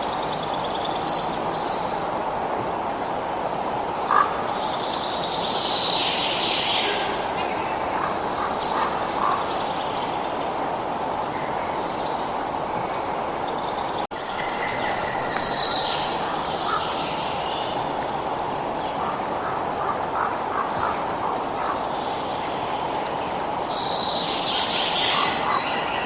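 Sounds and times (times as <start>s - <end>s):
birds chirping and calling: 4.1s - 12.3s, 13.2s - 17.8s, 23.6s - 26.0s.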